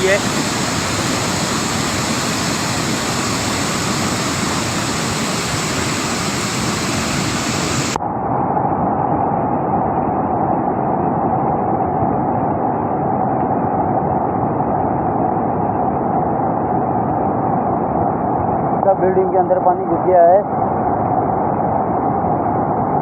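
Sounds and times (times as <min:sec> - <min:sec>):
floodwater rushing: 0:00.0 - 0:08.0.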